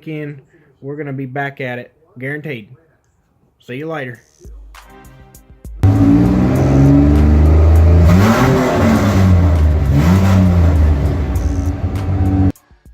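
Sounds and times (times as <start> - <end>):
diesel truck engine revving: 5.8 - 12.5.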